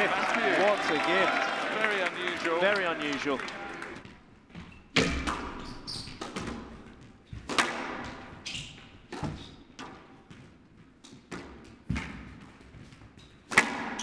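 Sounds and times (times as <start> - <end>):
squash ball knocks with echo: 13.5 - 14.0.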